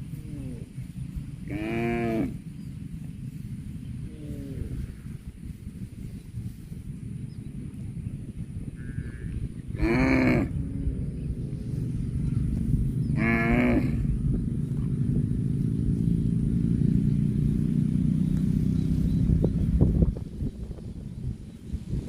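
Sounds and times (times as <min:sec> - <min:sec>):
steady low rumble: 0:00.0 - 0:22.0
cattle mooing: 0:01.4 - 0:02.4, 0:04.0 - 0:05.2, 0:08.8 - 0:12.4, 0:13.1 - 0:14.1.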